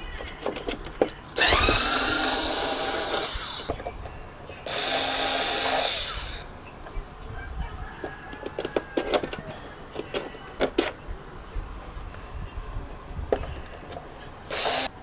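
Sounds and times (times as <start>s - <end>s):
power tool motor whine: 1.4s - 3.7s, 4.7s - 6.4s, 14.5s - 14.9s.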